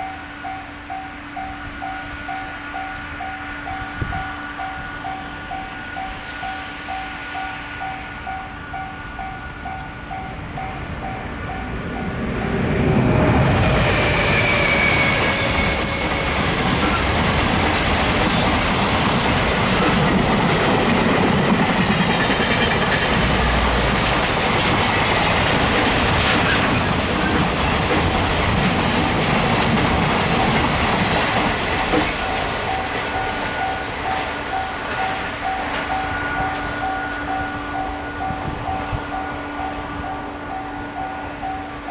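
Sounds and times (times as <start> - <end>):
level-crossing warning bell: 0.0 - 41.9
train passing over crossing: 0.0 - 41.9.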